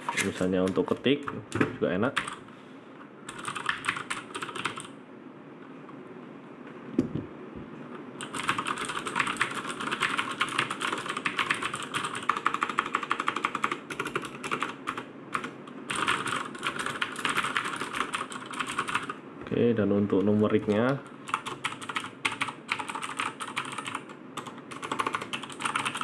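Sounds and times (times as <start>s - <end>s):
mechanical keyboard typing: 2.2s - 2.4s, 3.3s - 4.9s, 8.2s - 19.2s, 21.2s - 26.0s.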